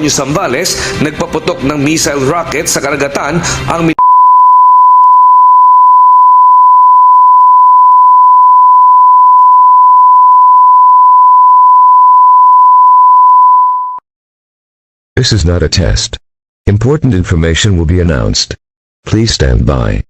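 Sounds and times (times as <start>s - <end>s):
high electronic sine tone: 4.0s - 14.0s.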